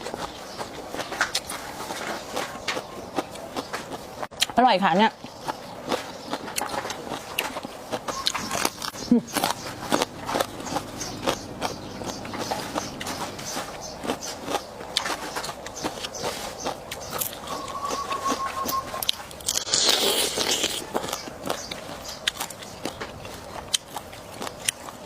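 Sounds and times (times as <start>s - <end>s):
biting and chewing: 0.0s - 25.0s
brief steady tone: 17.4s - 19.0s.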